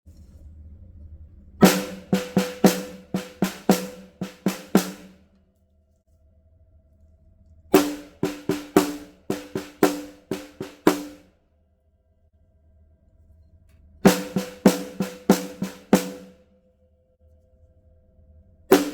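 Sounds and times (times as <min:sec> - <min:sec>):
drum strokes with ringing tone: 0:01.6 - 0:05.1, 0:07.8 - 0:11.2, 0:14.1 - 0:16.3.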